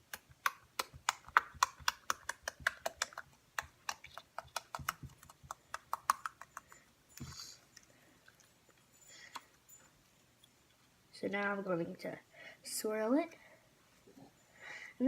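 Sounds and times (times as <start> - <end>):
slime squishing with clicks and pops: 0.0 - 7.5.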